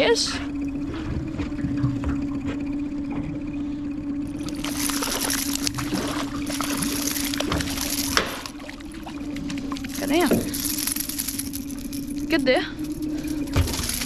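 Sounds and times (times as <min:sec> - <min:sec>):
motor hum: 0:00.0 - 0:14.0
water splashing beside boat: 0:04.4 - 0:11.0.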